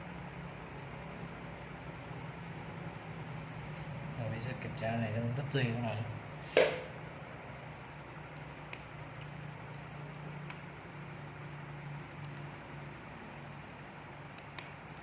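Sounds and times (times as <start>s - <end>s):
steady low hum: 0.0s - 15.0s
sharp knock: 6.5s - 6.9s.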